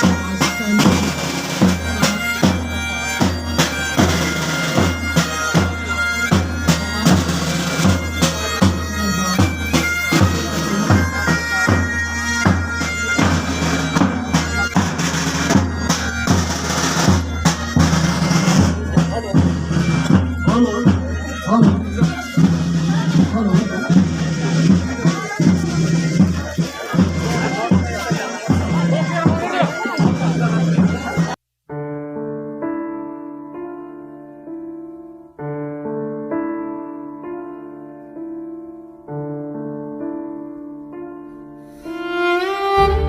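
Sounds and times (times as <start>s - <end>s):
bagpipes playing: 0.0s - 31.4s, 42.1s - 43.0s
steady drumbeat: 0.0s - 31.4s, 42.8s - 43.0s.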